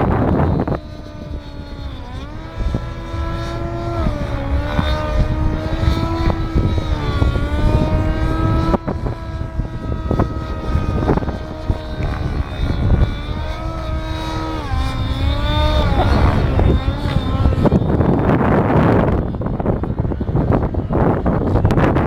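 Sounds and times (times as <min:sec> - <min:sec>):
model aircraft motor whine: 0:00.0 - 0:22.0
wind buffeting microphone: 0:00.0 - 0:22.0.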